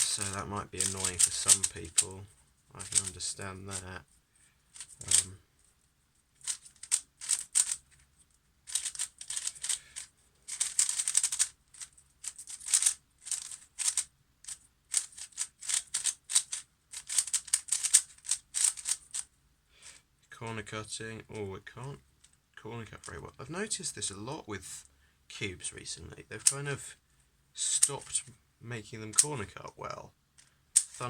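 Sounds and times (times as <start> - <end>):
puzzle cube plastic clicking: 0.0 - 2.0, 2.8 - 3.2, 6.4 - 7.8, 8.7 - 19.3, 30.4 - 31.0.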